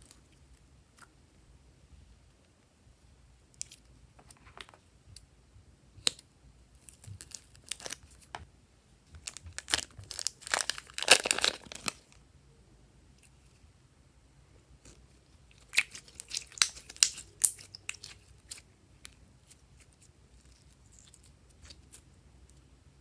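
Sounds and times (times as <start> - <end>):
slime crackling and popping: 6.8 - 8.1, 9.2 - 12.1, 15.6 - 18.6.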